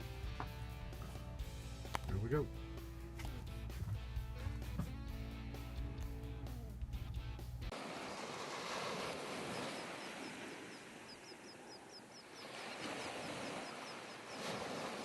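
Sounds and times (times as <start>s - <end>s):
guitar music: 0.0s - 7.7s
small bird chirping rapidly: 9.6s - 14.4s.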